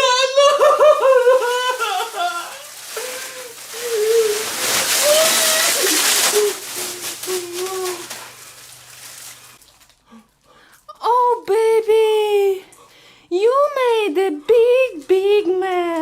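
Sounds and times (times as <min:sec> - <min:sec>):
water splashing: 0:01.2 - 0:09.6.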